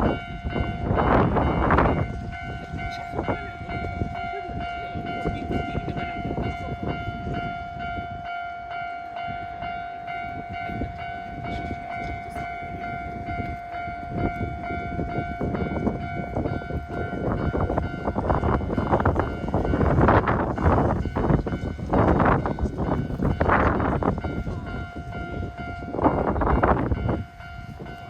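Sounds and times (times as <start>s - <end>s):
level crossing warning bell: 0.0s - 28.0s.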